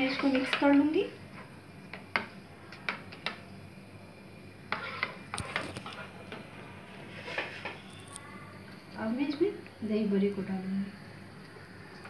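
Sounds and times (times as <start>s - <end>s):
spoon stirring in a bowl: 4.7s - 6.4s.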